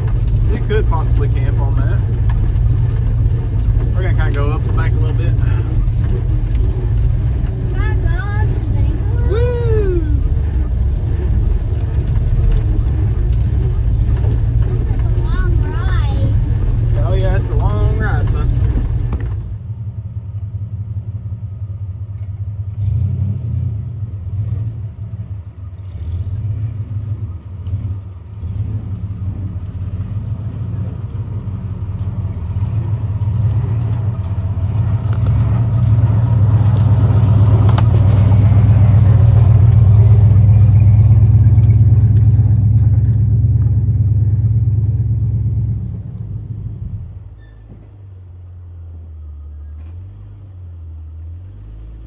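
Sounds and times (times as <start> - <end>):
knocks and clatter: 0.0 - 19.6, 27.6 - 44.0
engine running under load: 0.0 - 52.0.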